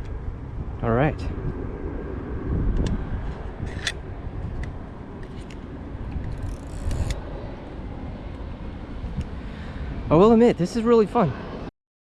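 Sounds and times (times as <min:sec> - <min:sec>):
wind rumble on microphone: 0:00.0 - 0:11.7
camera clicks and ticks: 0:06.2 - 0:07.2.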